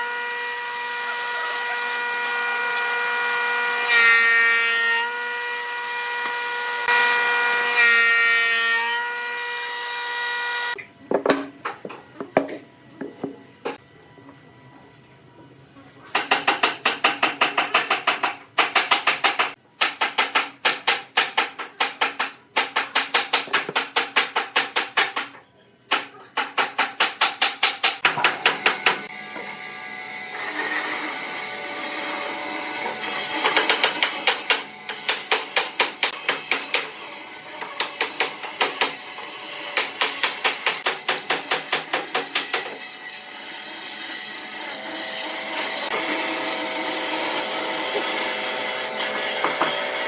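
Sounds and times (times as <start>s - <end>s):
wood lathe knocking: 32.8s - 36.9s, 49.2s - 50.0s.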